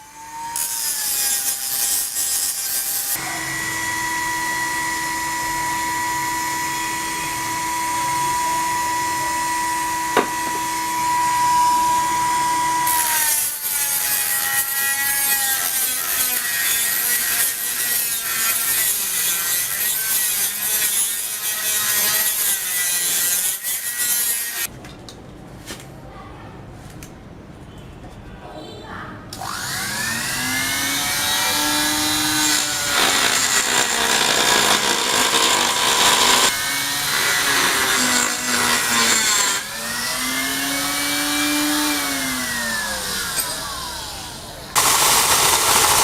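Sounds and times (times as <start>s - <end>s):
power tool whining: 0.0s - 16.4s, 29.4s - 46.0s
harsh cutting noise: 29.4s - 46.0s.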